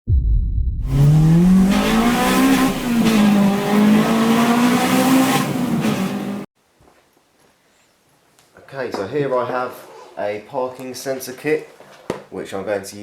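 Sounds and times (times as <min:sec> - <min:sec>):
car engine accelerating: 0:00.8 - 0:06.5.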